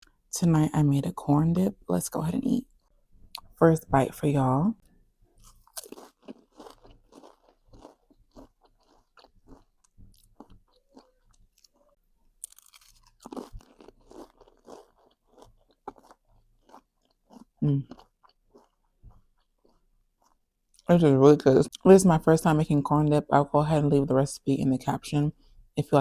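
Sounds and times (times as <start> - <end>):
crunchy bites and wet chewing: 5.4 - 20.9.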